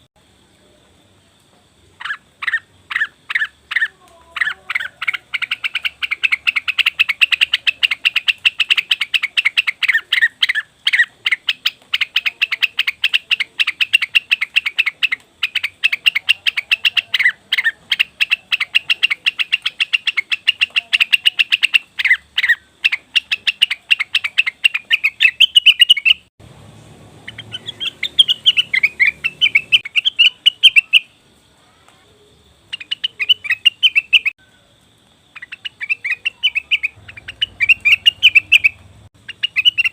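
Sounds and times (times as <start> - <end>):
bird chattering chirps: 2.0 - 26.3, 27.2 - 31.2, 32.7 - 34.4, 35.3 - 39.9
low rumbling noise: 26.4 - 29.8, 36.9 - 39.3.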